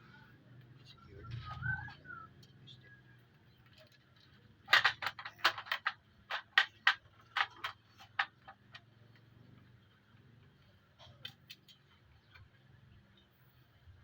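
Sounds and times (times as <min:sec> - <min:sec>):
sharp clicks and taps of plastic parts: 0:03.6 - 0:09.3.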